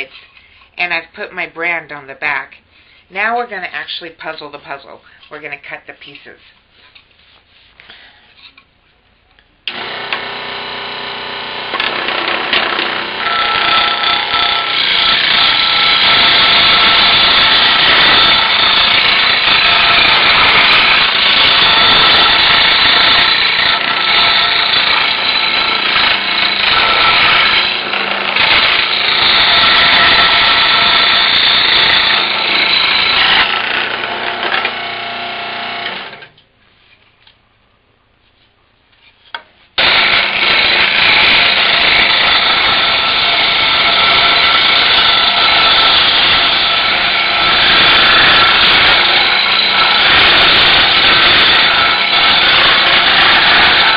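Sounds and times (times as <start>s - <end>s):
scroll saw cutting plywood: 9.7s - 36.2s, 39.8s - 53.9s.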